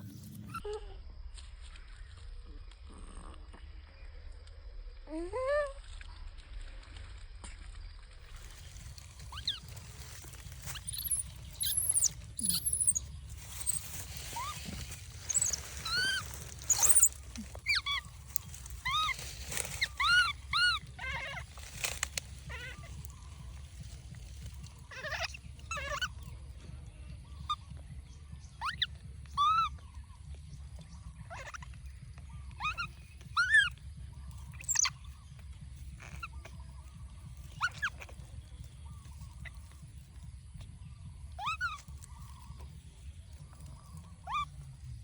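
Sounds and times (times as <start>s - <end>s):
steady low rumble: 0.0s - 45.0s
baby monkey crying: 8.4s - 26.3s, 28.6s - 29.9s, 31.2s - 31.7s, 32.5s - 33.8s, 34.5s - 35.1s, 36.0s - 36.6s, 37.4s - 38.3s, 41.3s - 42.5s, 43.6s - 44.7s.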